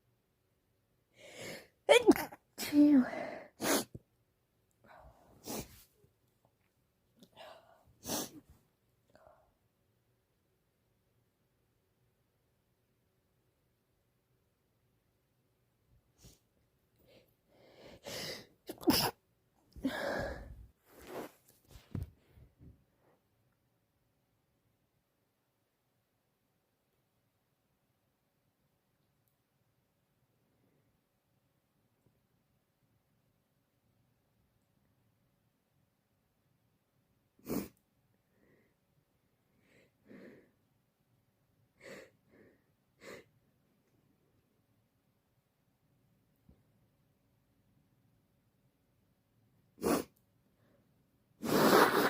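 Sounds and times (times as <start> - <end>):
woman sniffling: 1.2 - 4.0, 5.1 - 5.9, 7.3 - 8.5, 17.6 - 19.2, 19.8 - 21.3, 37.4 - 37.8
woman sneezing: 1.9 - 3.9, 18.7 - 19.2
sniffing through stuffy nose: 5.3 - 5.9, 20.9 - 21.5, 37.4 - 37.8, 49.8 - 50.2, 51.4 - 52.0.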